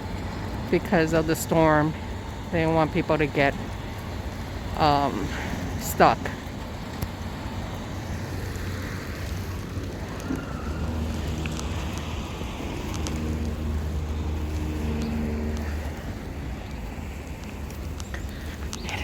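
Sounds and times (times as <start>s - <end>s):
wind buffeting microphone: 0.0s - 19.0s
light ticks: 6.4s - 7.2s, 17.4s - 19.0s.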